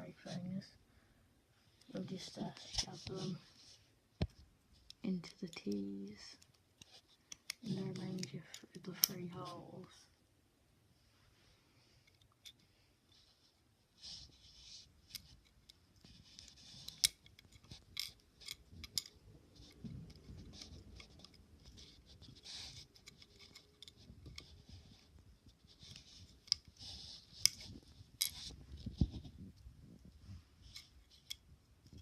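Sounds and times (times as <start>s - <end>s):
light scraping and rustling: 1.7s - 10.0s.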